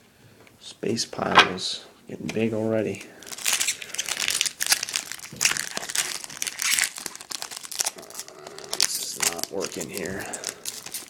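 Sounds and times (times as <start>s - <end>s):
foil wrapper crinkling and tearing: 3.2s - 11.0s.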